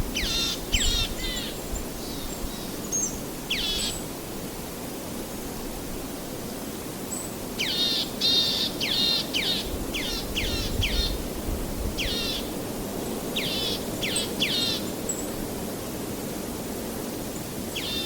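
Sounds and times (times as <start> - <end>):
bird harsh calls: 13.4 - 14.9.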